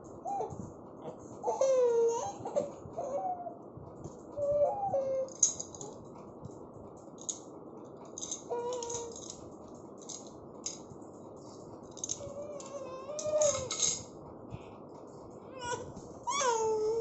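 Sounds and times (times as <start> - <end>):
baby's squeaky voice sounds: 15.6 - 17.0.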